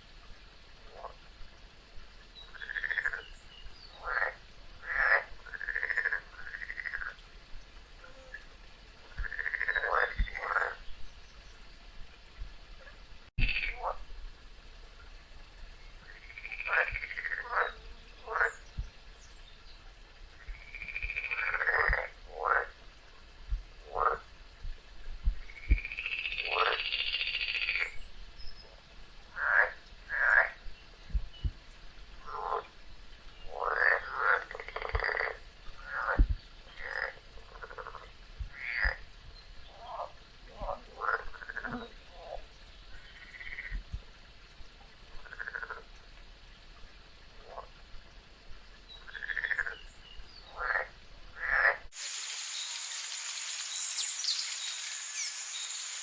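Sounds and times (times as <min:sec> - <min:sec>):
frogs croaking: 0:02.4 - 0:07.2, 0:09.0 - 0:10.9, 0:13.4 - 0:14.1, 0:16.0 - 0:18.7, 0:20.4 - 0:22.8, 0:23.8 - 0:24.3, 0:25.4 - 0:28.0, 0:29.3 - 0:30.7, 0:32.2 - 0:32.8, 0:33.4 - 0:43.9, 0:45.2 - 0:45.9, 0:48.9 - 0:56.0.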